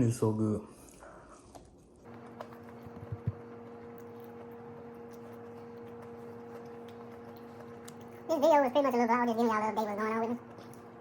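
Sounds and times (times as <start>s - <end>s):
low two-tone hum: 1.0s - 11.0s.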